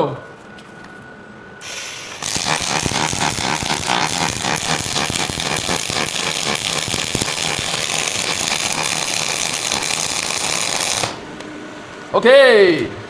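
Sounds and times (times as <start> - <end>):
short hiss: 1.6 - 11.2
welding arc crackling: 1.6 - 11.4.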